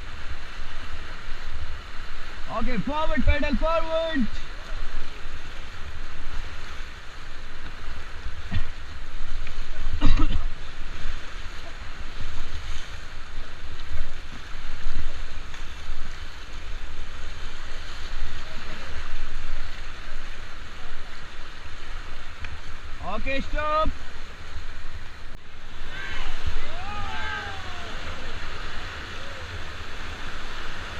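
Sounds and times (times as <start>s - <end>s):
rushing river water: 0.0s - 30.9s
person shouting: 25.8s - 28.3s.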